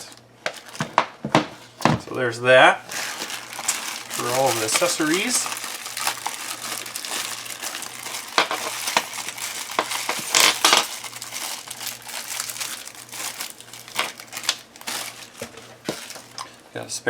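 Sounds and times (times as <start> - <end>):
plastic bag crinkling: 0.0 - 1.0, 2.8 - 16.6
metal parts clinking: 9.8 - 11.0.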